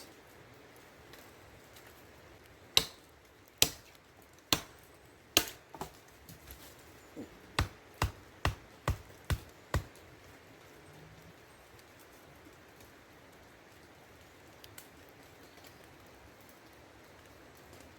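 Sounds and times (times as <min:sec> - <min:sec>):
tool knocking on wood: 0:07.6 - 0:09.9.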